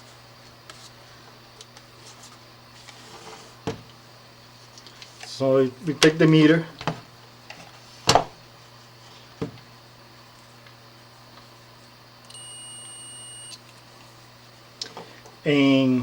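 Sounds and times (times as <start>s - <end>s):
multimeter continuity beep: 12.3s - 13.6s.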